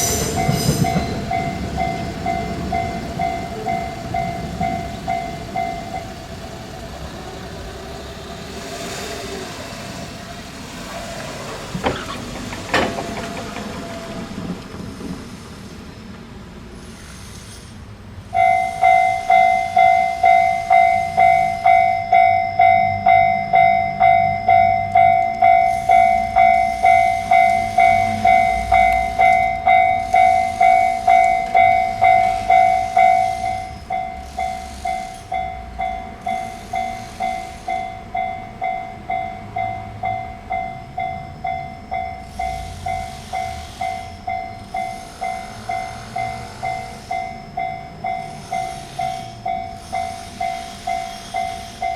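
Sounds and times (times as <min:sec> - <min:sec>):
low train rumble: 0:00.0 - 0:51.9
level crossing bell ringing: 0:18.4 - 0:36.9.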